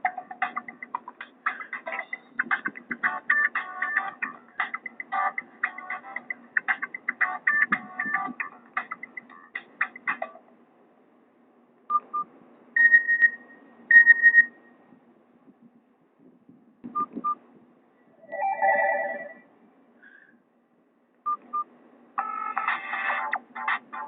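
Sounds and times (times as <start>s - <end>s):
quick beeps: 11.9s - 14.6s, 21.3s - 21.7s
high beeps: 12.8s - 14.6s.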